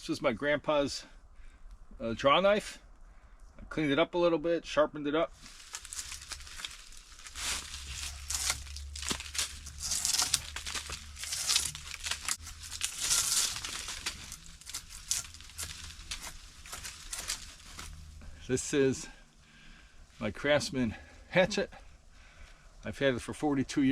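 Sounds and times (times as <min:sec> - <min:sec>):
drawknife scraping bark: 0:07.3 - 0:18.0.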